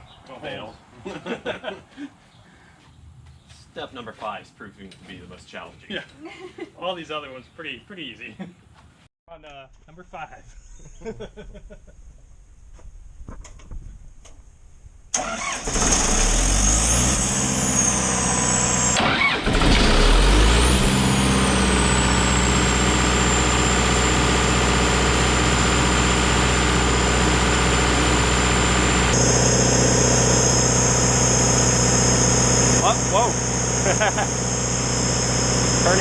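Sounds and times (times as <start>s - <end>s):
diesel generator engine running: 15.2s - 36.0s
high whine: 20.6s - 36.0s.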